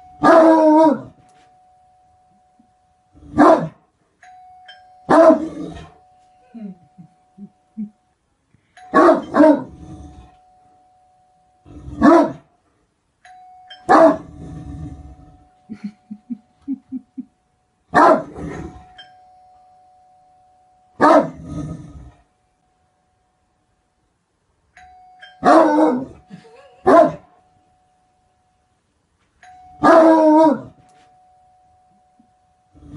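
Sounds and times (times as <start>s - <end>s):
faint steady tone: 0.0s - 32.9s
large dog barking: 0.2s - 1.2s, 3.3s - 3.8s, 5.1s - 5.9s, 8.9s - 9.8s, 12.0s - 12.5s, 13.9s - 14.4s, 17.9s - 18.7s, 21.0s - 21.5s, 25.4s - 26.2s, 26.8s - 27.3s, 29.8s - 30.8s.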